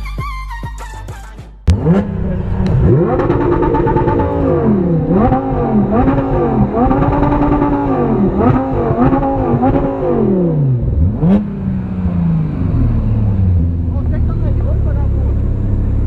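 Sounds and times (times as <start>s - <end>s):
engine burst as revs drop: 1.7s - 13.6s
car engine revving and idling: 1.7s - 16.0s.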